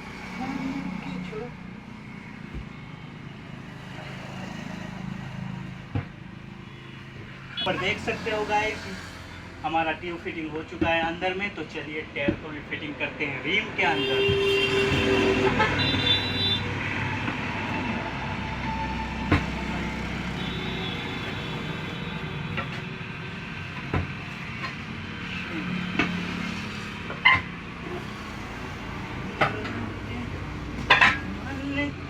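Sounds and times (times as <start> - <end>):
road traffic: 0.0 - 32.0
vehicle horns tooting: 6.6 - 8.4, 13.8 - 22.6
sharp knocks on tractor tyre: 23.7 - 24.8.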